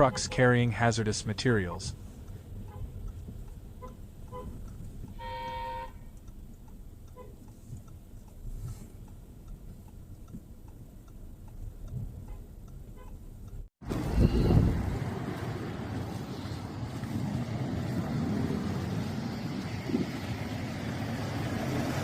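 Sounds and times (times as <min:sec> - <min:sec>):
car horn: 0:00.0 - 0:00.6, 0:02.6 - 0:03.0, 0:03.8 - 0:06.2, 0:07.1 - 0:07.4, 0:12.2 - 0:13.2, 0:14.0 - 0:14.9
low traffic rumble: 0:00.0 - 0:22.0.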